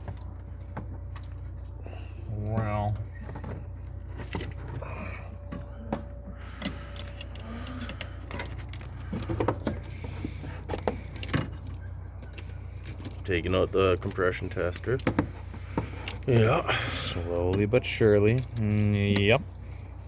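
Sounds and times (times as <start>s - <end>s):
steady low hum: 0.0s - 20.0s
metal tools clicking and clinking: 5.4s - 9.9s.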